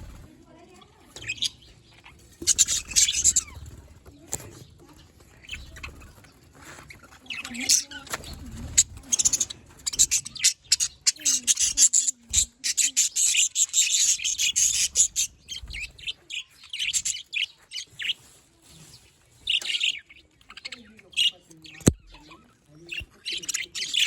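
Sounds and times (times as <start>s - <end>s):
budgerigars chirping: 1.2s - 3.6s, 6.9s - 18.2s, 19.0s - 24.0s.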